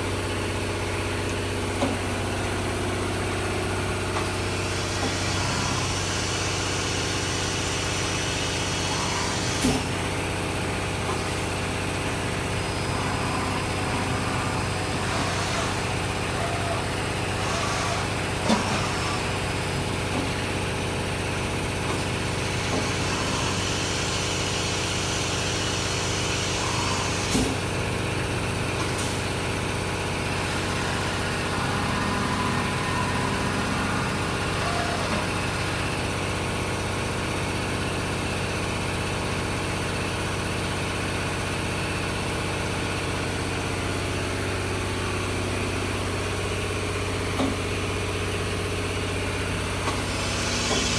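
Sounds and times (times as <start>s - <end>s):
machining center humming: 0.0s - 39.0s.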